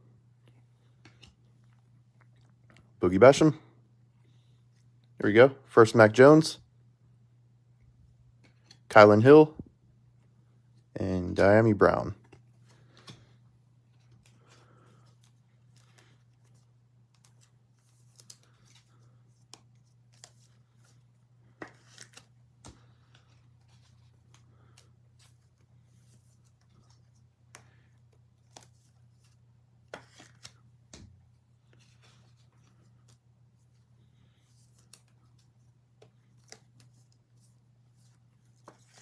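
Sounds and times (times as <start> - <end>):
handling trading cards: 0.4 - 3.5, 8.3 - 9.4, 10.2 - 39.0.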